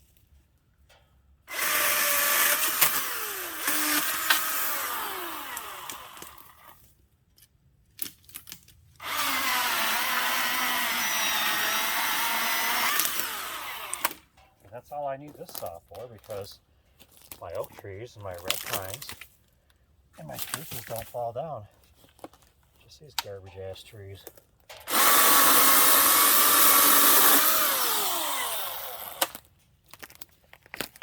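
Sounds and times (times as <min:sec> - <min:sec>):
chainsaw cutting wood: 0:01.5 - 0:06.8, 0:09.0 - 0:14.3, 0:24.8 - 0:29.5.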